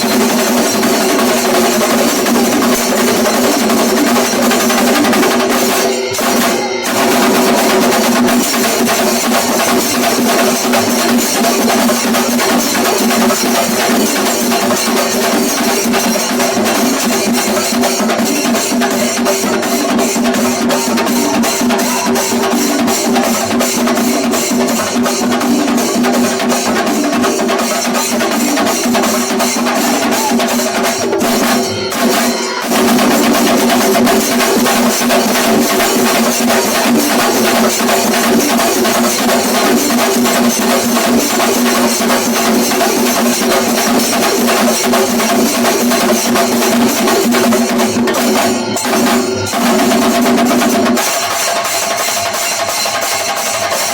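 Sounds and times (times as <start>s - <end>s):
cymbals clashing: 0.0s - 53.9s
drums beaten in fast rhythm: 0.0s - 53.9s.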